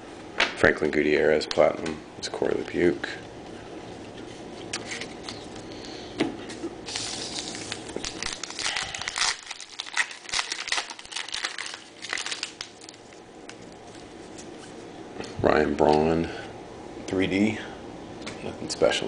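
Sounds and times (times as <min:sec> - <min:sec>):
card pack wrapper crinkling and tearing: 0:06.9 - 0:14.1.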